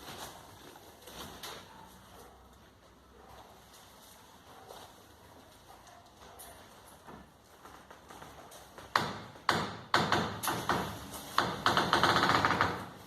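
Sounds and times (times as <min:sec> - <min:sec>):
sharp knocks and clattering taps: 0:07.0 - 0:13.0.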